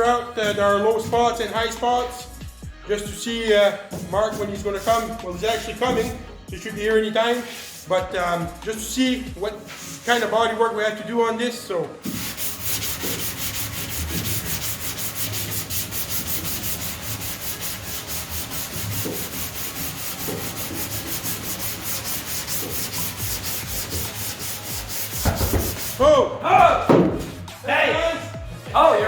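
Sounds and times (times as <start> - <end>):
sandpaper rubbing on car panel: 3.9 - 6.2, 7.3 - 8.0, 9.5 - 10.4, 12.0 - 26.0.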